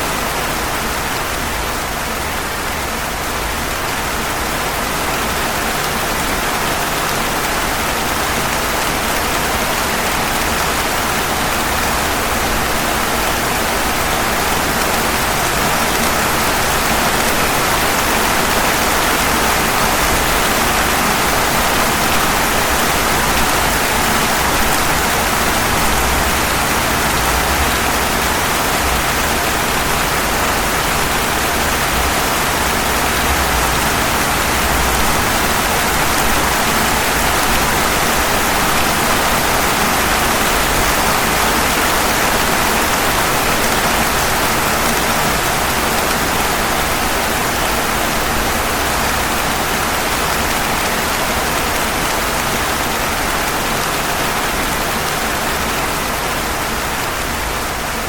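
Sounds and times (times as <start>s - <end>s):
rain falling on pavement: 0.0s - 58.0s.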